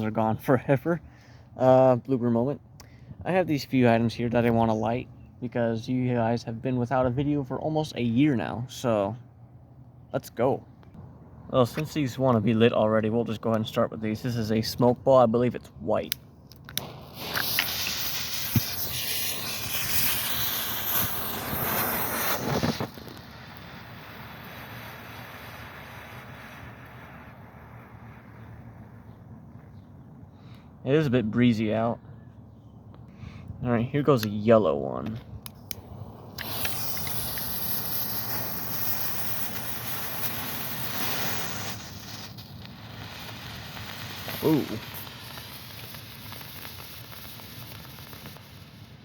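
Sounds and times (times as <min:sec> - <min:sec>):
faint crackles: 0:13.2 - 0:30.7, 0:34.1 - 0:49.0
smoke firework hissing: 0:16.7 - 0:29.2, 0:35.6 - 0:49.0.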